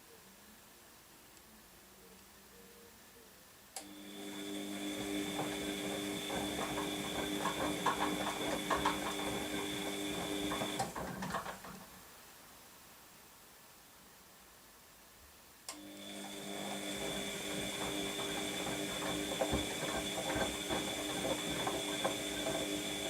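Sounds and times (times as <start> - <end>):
washing machine motor whine: 3.8 - 11.6, 15.8 - 23.0
tumbling load knocks: 5.1 - 11.8, 16.8 - 23.0
click: 15.7 - 15.9.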